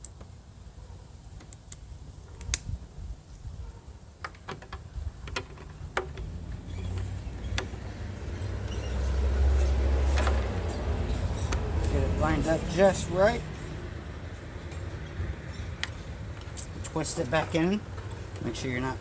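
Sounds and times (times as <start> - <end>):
small clicks and taps: 1.4 - 1.8.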